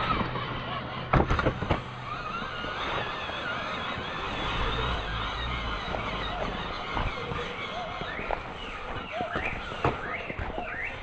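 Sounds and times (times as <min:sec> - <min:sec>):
toy truck electric motor whining: 0:00.0 - 0:11.0
knocks and clatters: 0:01.1 - 0:01.9.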